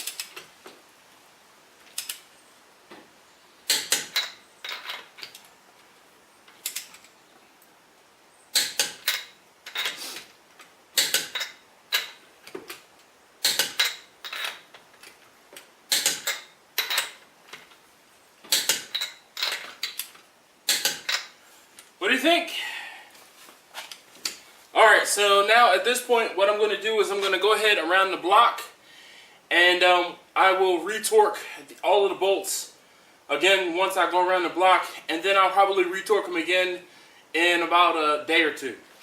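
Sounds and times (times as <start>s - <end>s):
torque wrench clicking: 8.6s - 10.0s, 11.0s - 12.2s, 13.4s - 14.6s, 15.9s - 17.2s, 18.5s - 20.1s, 20.7s - 21.3s.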